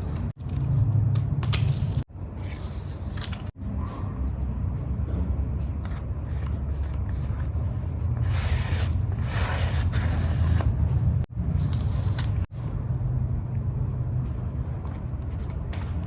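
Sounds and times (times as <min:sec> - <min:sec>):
paper rubbing and scraping: 0:05.9 - 0:12.5.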